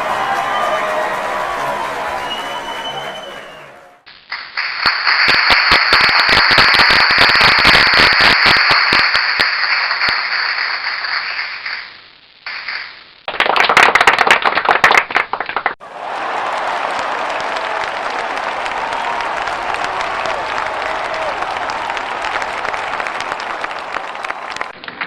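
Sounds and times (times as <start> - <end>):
crowd applause: 0.0 - 4.1, 13.3 - 24.8.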